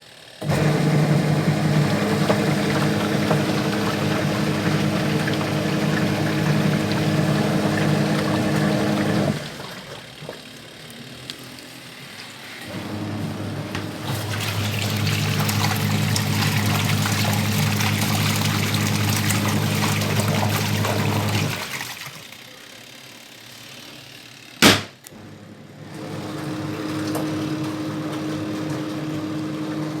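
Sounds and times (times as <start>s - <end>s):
washing machine motor humming: 0.2s - 11.3s, 12.4s - 30.0s
water churning: 0.4s - 10.2s, 13.6s - 22.5s.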